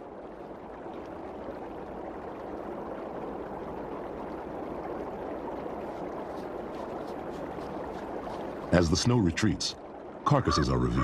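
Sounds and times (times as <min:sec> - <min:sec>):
stream flowing: 0:00.0 - 0:11.0.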